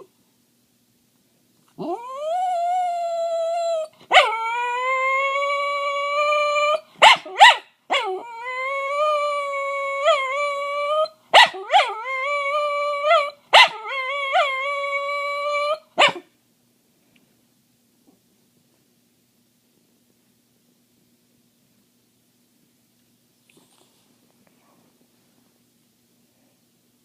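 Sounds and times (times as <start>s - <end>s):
dog howling: 1.8s - 16.2s
dog yelping: 3.8s - 4.8s, 6.4s - 8.5s, 11.0s - 14.6s, 15.5s - 16.3s.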